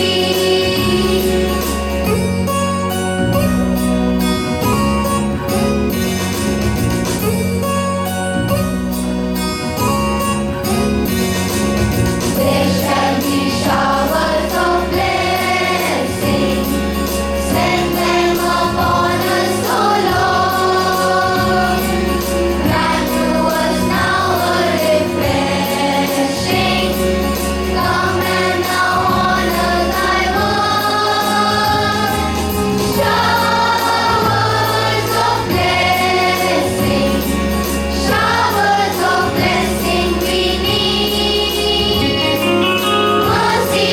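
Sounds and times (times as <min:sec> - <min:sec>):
group of voices singing: 0:00.0 - 0:01.9, 0:12.4 - 0:43.9
instrumental accompaniment with bass: 0:00.0 - 0:43.9.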